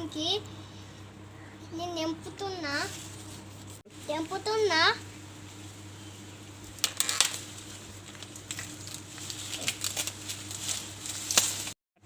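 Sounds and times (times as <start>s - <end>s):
corn leaves rustling and crackling: 2.8s - 11.8s
corn ear snapping off stalk: 9.5s - 10.2s, 11.2s - 11.7s.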